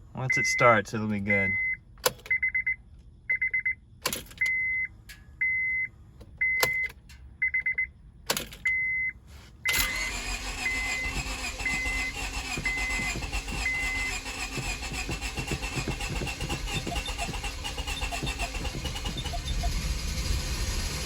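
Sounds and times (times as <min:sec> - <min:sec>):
car warning chime beeping: 0:00.2 - 0:03.8, 0:04.4 - 0:07.9, 0:08.6 - 0:19.8
car engine turning over: 0:09.7 - 0:21.0.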